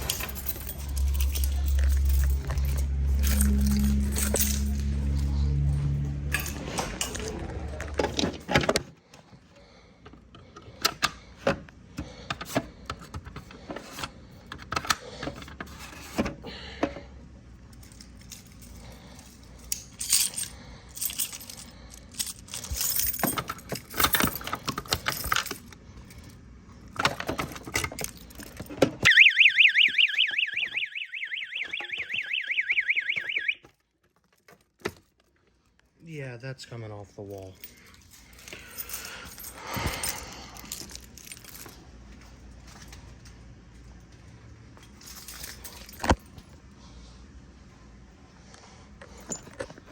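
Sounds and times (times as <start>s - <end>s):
metallic clicking and clinking: 0.0s - 5.3s
fire alarm warbling: 29.1s - 33.6s.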